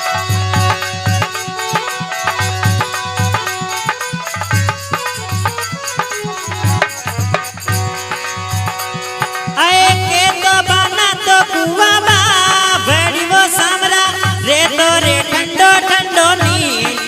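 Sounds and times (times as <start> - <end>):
folk melody: 0.0 - 10.9
hand drum beat: 0.0 - 17.0.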